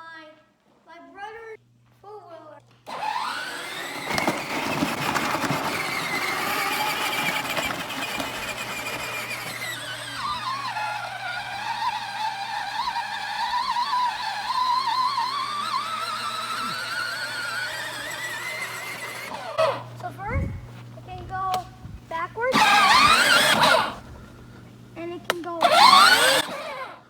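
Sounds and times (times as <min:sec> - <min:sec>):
small electric motor whining: 0:02.8 - 0:27.0
low steady hum: 0:07.6 - 0:27.0.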